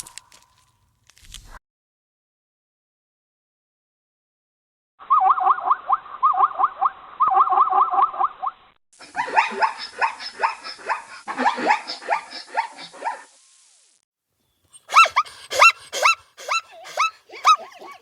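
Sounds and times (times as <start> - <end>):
jackal yelping: 5.1 - 13.3, 14.8 - 18.0.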